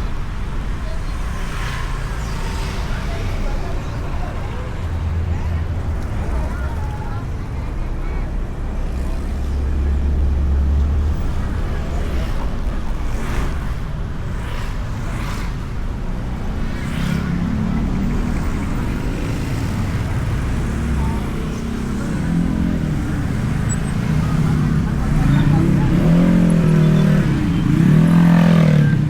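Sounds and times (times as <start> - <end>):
road rumble: 0.0 - 29.0
motorbike engine drone: 15.1 - 29.0.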